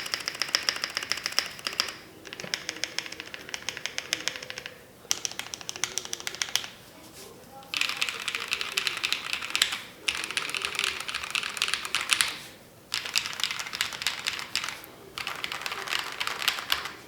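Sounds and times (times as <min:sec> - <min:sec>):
rapid mechanical keyboard typing: 0:00.0 - 0:06.8, 0:07.7 - 0:17.0.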